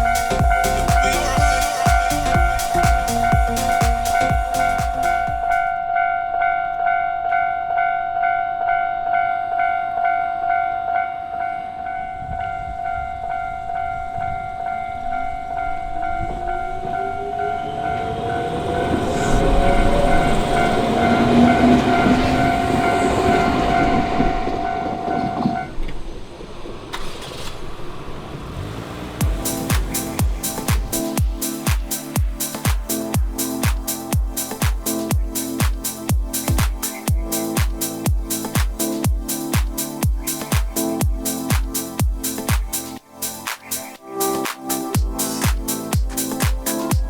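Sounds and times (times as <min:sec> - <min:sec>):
electric train whine: 0:00.0 - 0:33.1
train wheel and running noise: 0:16.0 - 0:27.2.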